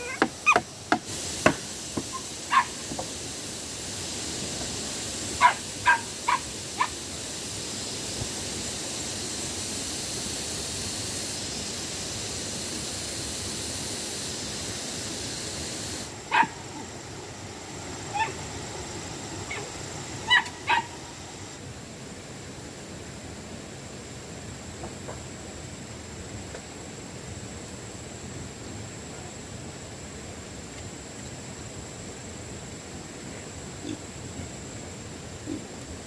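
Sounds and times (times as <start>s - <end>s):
steady high hiss: 0.0s - 36.0s
dog barking: 2.5s - 2.8s, 5.4s - 7.0s, 16.3s - 16.9s, 18.1s - 18.4s, 19.5s - 21.0s.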